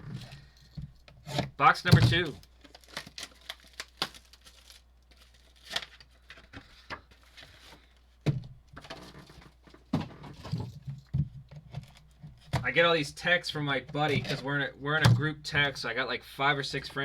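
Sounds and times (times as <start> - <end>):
wrapping crinkling and tearing: 1.5 - 8.1.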